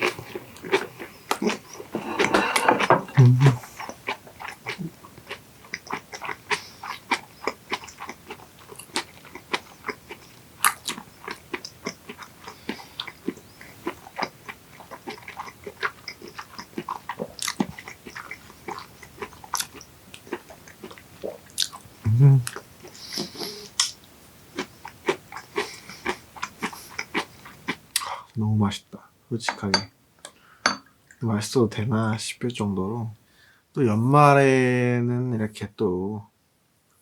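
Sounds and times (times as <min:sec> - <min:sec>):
chewing mouth clicks: 0:03.7 - 0:21.8.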